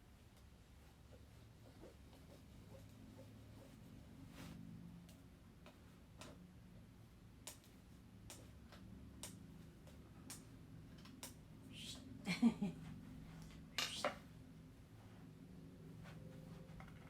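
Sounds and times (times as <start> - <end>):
hand tools clicking and tapping: 7.4 - 11.4.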